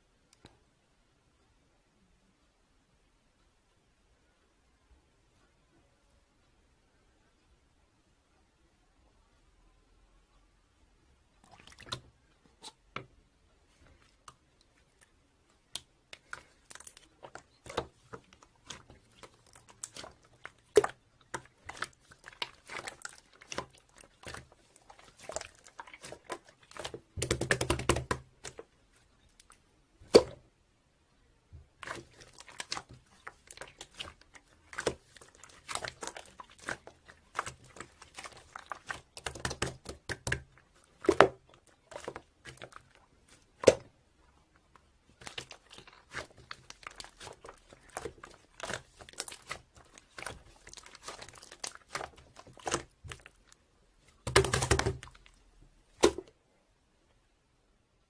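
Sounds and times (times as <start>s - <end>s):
crinkly handling rustling: 44.5s - 55.4s.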